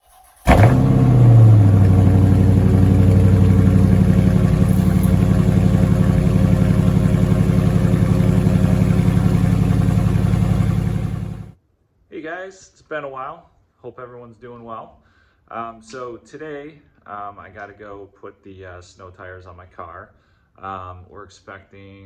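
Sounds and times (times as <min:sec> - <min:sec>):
car engine revving then idling: 0:00.4 - 0:11.5.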